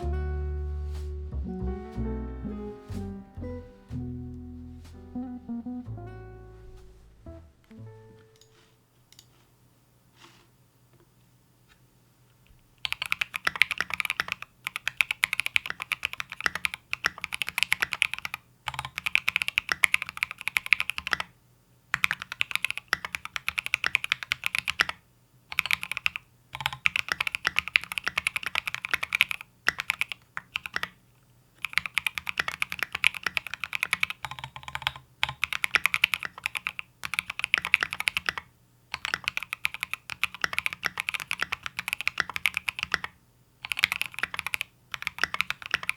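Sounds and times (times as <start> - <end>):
fast typing key clacks: 12.8 - 21.3, 22.0 - 30.9, 31.6 - 45.9.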